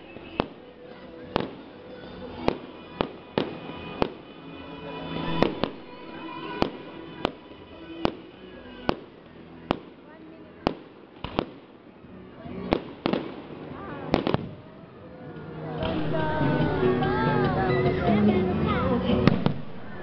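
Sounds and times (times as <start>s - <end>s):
fireworks bangs: 0.0s - 1.7s, 2.3s - 11.8s, 12.6s - 14.6s, 15.8s - 17.5s, 19.2s - 20.0s
music playing: 0.0s - 10.7s, 11.8s - 20.0s.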